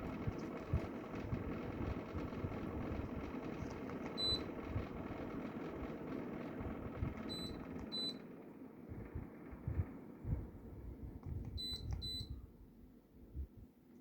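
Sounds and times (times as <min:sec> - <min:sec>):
air conditioner humming: 0:00.0 - 0:14.0.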